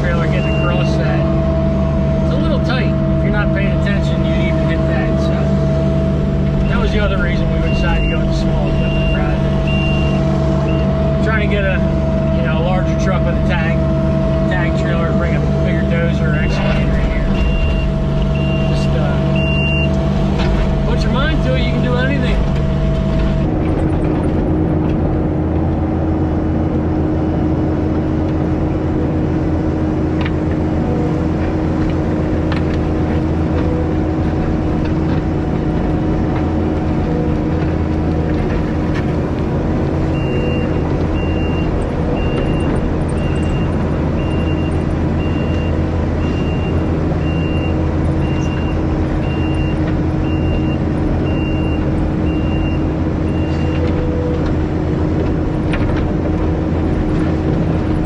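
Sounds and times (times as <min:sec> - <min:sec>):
diesel earthmoving machine running: 0:00.0 - 0:58.0
reversing alarm beeping: 0:00.2 - 0:01.2, 0:06.6 - 0:11.2, 0:16.0 - 0:23.2, 0:40.1 - 0:53.9.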